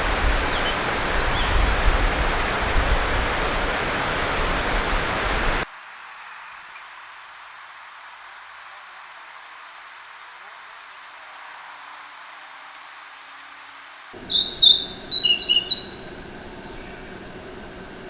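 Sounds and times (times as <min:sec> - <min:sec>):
rushing water: 0:00.0 - 0:05.7, 0:14.2 - 0:18.0
faint hiss: 0:00.0 - 0:18.0
faint high bird notes: 0:14.2 - 0:18.0.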